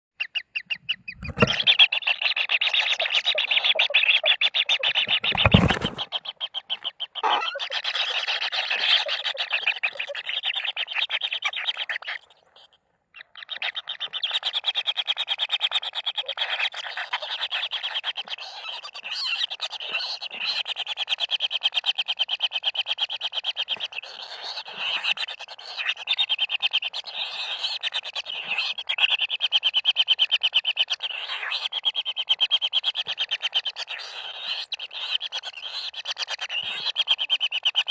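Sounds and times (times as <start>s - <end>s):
bird chicks buzzing churr: 0.2s - 11.9s.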